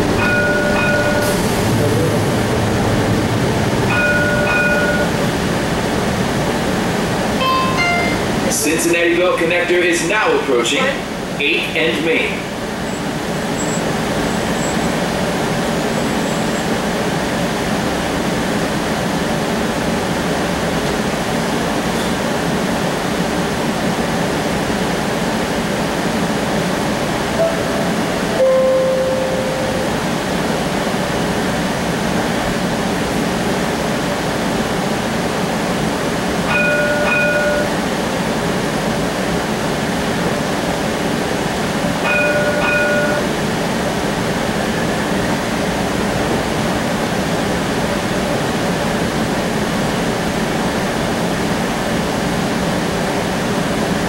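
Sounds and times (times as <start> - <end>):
streetcar rumble and hum: 0.0 - 54.0
brief chime tones: 7.4 - 8.3, 28.4 - 29.9
falling two-note tone: 7.4 - 8.4, 27.4 - 30.0.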